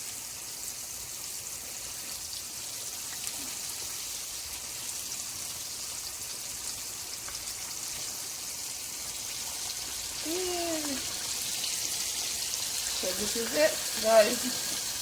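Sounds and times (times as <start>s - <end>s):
food sizzling in hot oil: 0.0s - 15.0s
person humming: 10.2s - 11.0s.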